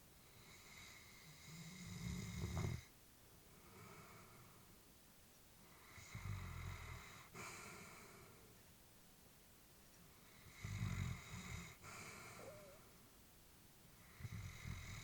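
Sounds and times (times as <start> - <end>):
dog breathing and snoring: 0.2 - 2.9, 5.6 - 8.4, 10.2 - 12.9, 14.0 - 15.0.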